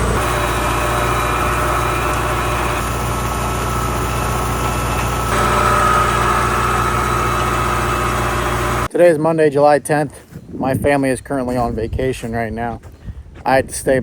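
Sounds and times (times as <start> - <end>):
tractor diesel engine running: 0.0 - 8.9.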